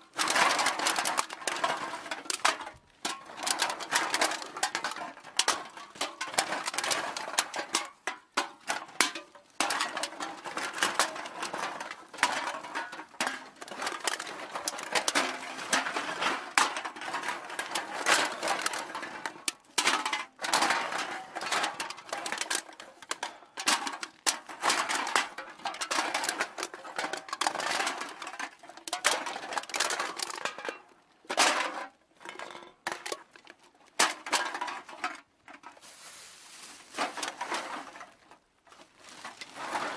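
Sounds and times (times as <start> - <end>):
aluminium cans clattering: 0.0 - 39.9.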